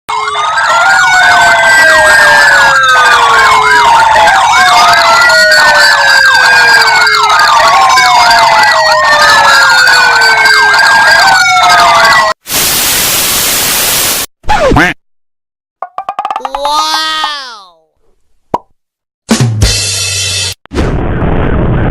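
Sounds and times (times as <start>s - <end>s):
electronic sirens wailing: 0.1s - 12.4s
loud hiss: 12.4s - 14.3s.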